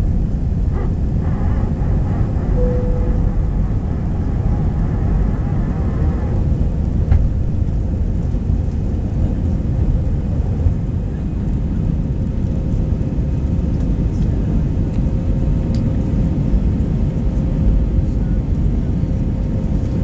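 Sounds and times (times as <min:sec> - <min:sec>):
jet engines rumbling on take-off: 0:00.0 - 0:20.0
faint steady tone: 0:02.6 - 0:03.8.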